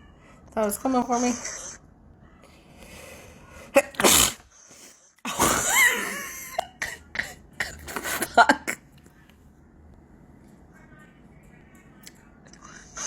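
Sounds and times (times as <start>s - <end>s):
person sneezing: 3.7s - 4.4s, 5.3s - 6.2s.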